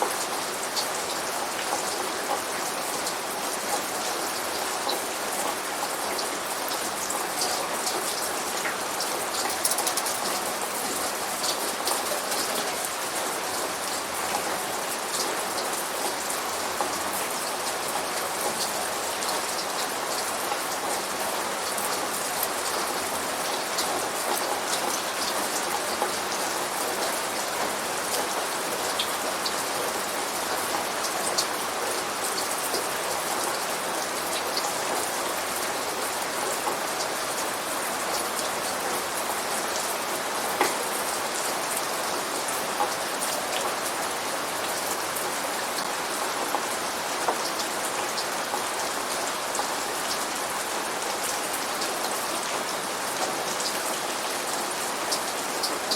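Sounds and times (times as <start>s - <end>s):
steady rain: 0.0s - 55.9s.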